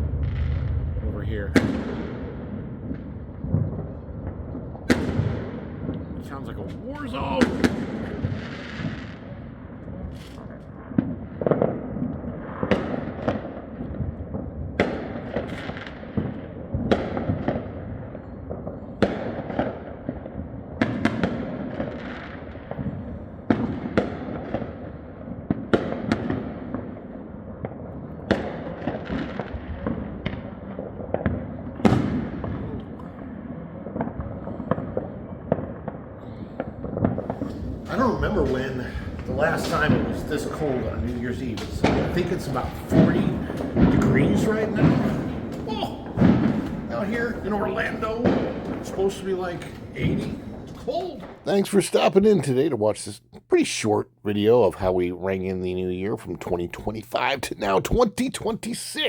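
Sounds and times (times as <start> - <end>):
distant thuds: 0.0 - 3.9, 4.9 - 9.2, 37.2 - 51.6
fireworks crackling: 0.0 - 17.8, 37.0 - 52.6
fireworks booming and banging: 0.0 - 52.5.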